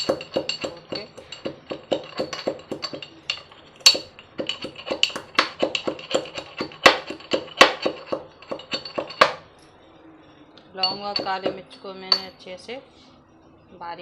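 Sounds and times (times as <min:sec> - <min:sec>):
pestle pounding in a mortar: 0:00.0 - 0:09.4, 0:10.8 - 0:12.3.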